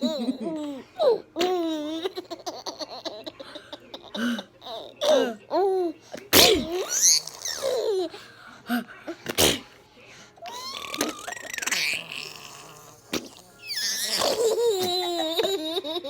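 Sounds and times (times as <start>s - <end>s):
baby laughing and squealing: 10.5s - 12.4s, 13.6s - 16.0s.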